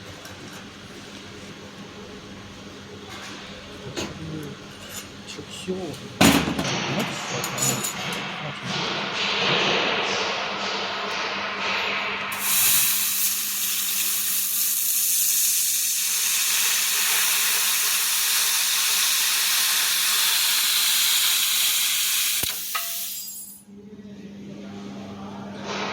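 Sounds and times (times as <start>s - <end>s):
steady low hum: 0.0s - 13.7s
laser cleaner sizzling hiss: 12.3s - 23.6s.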